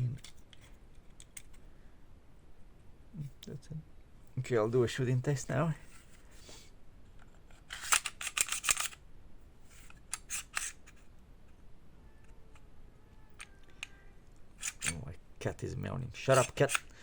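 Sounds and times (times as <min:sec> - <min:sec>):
airsoft pistol metallic clicks: 0:16.3 - 0:17.0.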